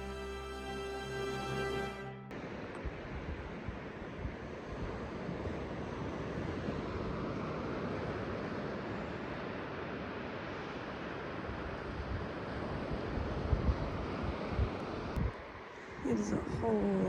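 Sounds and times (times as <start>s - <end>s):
ocean surf washing in: 2.3s - 17.0s
wind on microphone: 2.4s - 9.9s, 11.4s - 17.0s.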